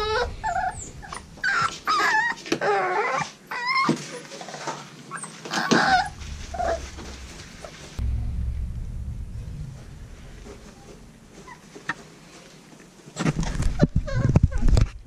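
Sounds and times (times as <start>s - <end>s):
low rumble: 0.0s - 2.2s, 5.8s - 12.3s
puppy whimpering: 0.0s - 4.2s.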